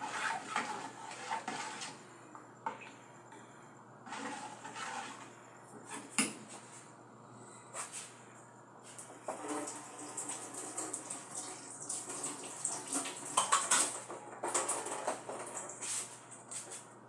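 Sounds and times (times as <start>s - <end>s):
water running from tap: 9.3s - 16.0s.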